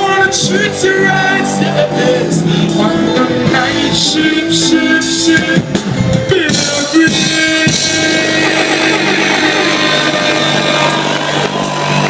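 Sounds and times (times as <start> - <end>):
crowd noise: 0.0 - 12.0.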